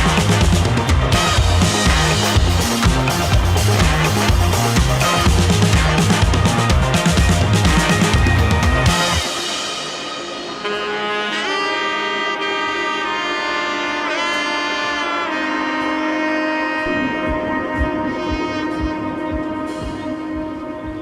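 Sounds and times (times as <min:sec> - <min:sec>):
wind instrument long notes: 0:00.0 - 0:21.0
low drum beat: 0:16.8 - 0:21.0.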